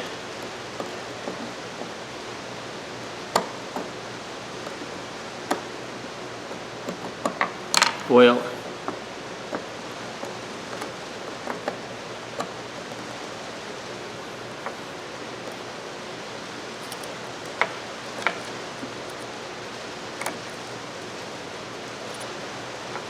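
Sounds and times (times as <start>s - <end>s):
pliers clicking on metal clip: 16.7s - 19.4s, 20.0s - 22.4s.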